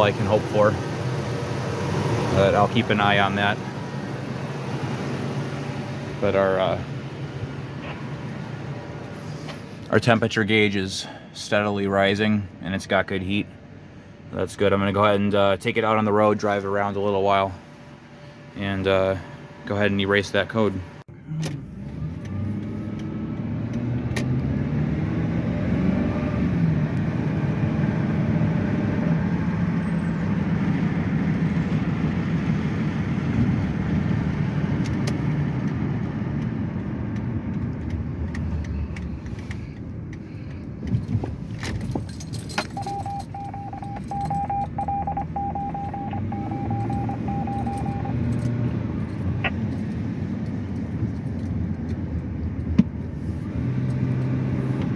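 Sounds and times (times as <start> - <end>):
car engine driving off: 21.2 - 51.2
vehicle warning chime beeping: 42.4 - 48.6.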